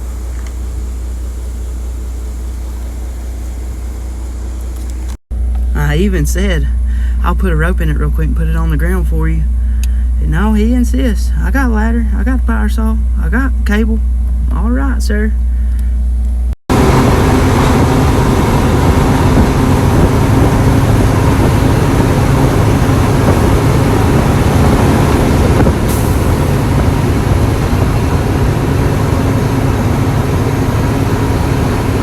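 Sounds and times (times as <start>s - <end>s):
truck engine running: 0.0s - 32.0s.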